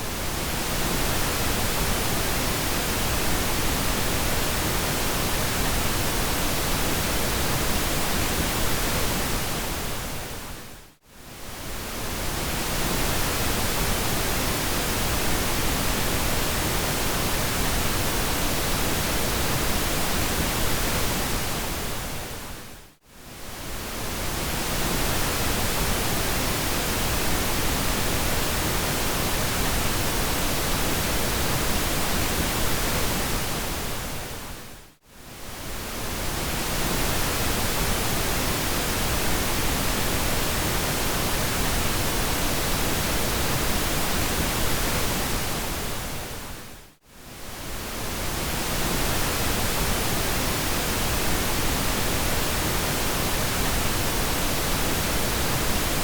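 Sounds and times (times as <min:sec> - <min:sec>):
pink noise hiss: 0:35.3 - 0:56.0.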